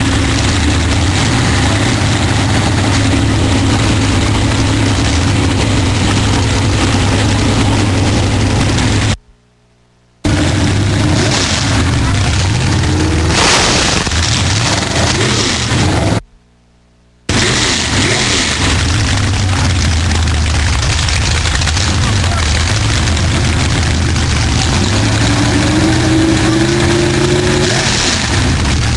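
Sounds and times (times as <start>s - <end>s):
car engine running loudly: 0.0s - 9.2s, 10.2s - 16.2s, 17.3s - 28.9s
voices: 11.7s - 13.4s, 18.8s - 27.6s.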